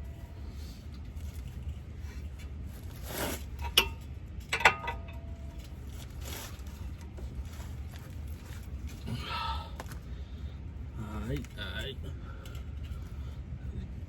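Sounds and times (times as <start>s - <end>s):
low steady rumble: 0.0s - 14.0s
metal clinking: 3.6s - 5.8s.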